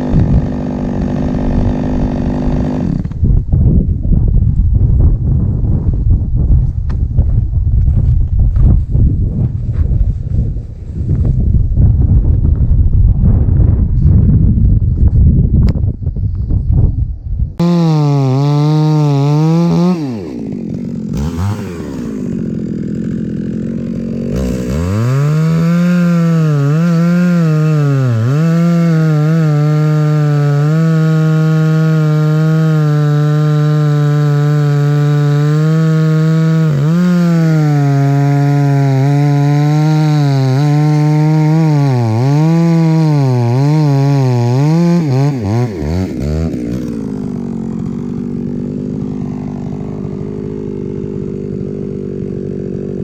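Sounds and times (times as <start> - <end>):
chainsaw cutting wood: 0.0 - 3.4, 17.6 - 53.0.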